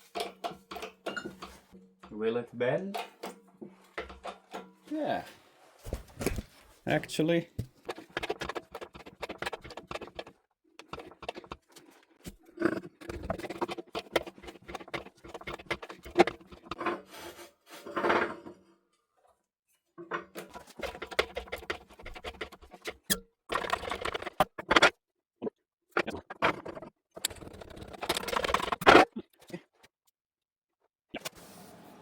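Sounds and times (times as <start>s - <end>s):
tools scraping: 0.0s - 2.2s, 2.9s - 18.6s, 20.3s - 25.0s, 26.0s - 29.1s
knocks and clicks: 7.6s - 11.9s, 12.6s - 16.9s, 20.3s - 25.0s, 26.0s - 29.0s.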